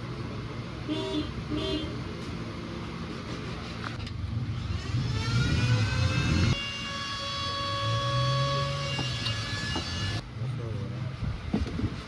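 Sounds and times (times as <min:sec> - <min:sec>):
motorcycle engine revving: 0:04.0 - 0:06.6.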